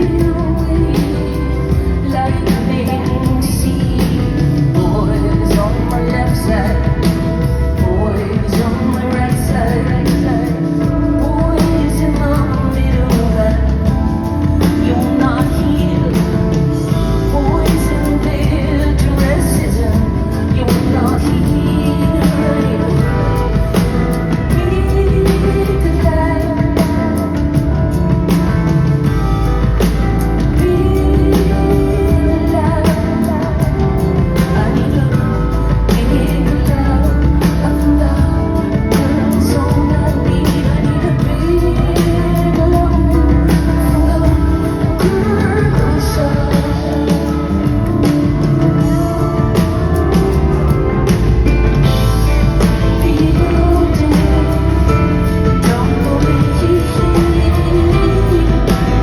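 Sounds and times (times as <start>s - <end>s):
rock band playing: 0.0s - 59.0s
woman singing: 0.0s - 59.0s.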